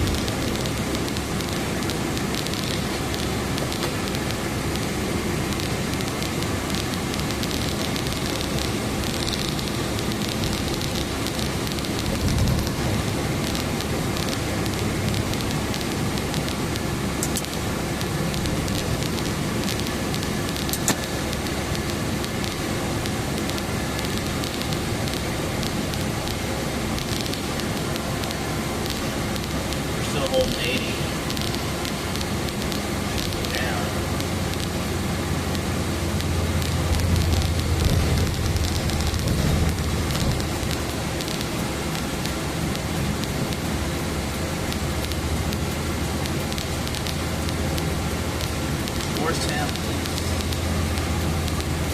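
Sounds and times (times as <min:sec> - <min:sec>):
car blower fan rushing air: 0:00.0 - 0:51.9
faint crackling ticks: 0:00.0 - 0:51.9
heater fan: 0:00.0 - 0:51.9
sharp click: 0:20.6 - 0:21.0.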